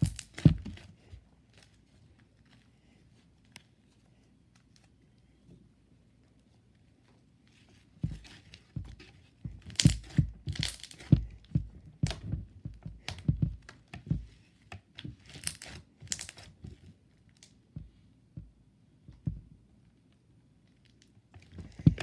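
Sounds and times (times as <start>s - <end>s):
slime sticky pops and crackles: 9.7s - 11.1s.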